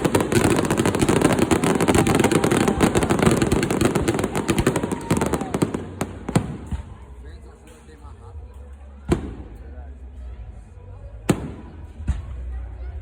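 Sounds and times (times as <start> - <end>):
fireworks crackling bangs: 0.0 - 7.8.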